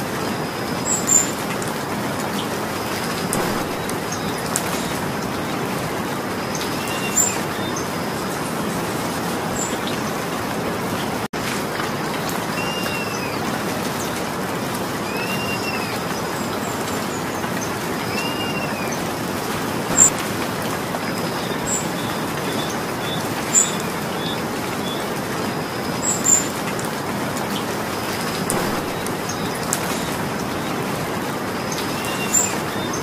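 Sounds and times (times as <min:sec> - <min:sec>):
steady rain: 0:00.0 - 0:33.0
sharp high bird chirps: 0:03.4 - 0:05.0, 0:28.5 - 0:30.2.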